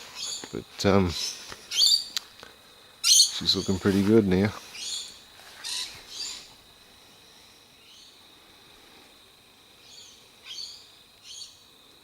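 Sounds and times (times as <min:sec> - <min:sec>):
birds chirping: 0:00.0 - 0:02.3, 0:03.0 - 0:06.6.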